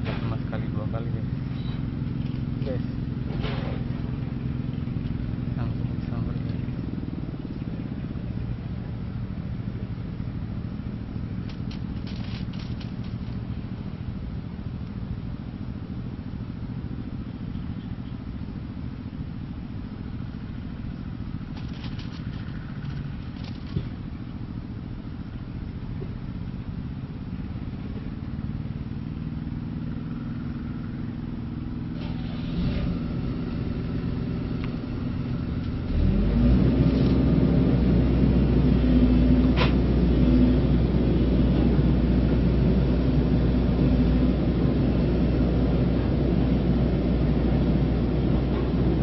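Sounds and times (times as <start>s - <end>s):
small engine running: 11.4s - 13.6s, 21.4s - 24.1s.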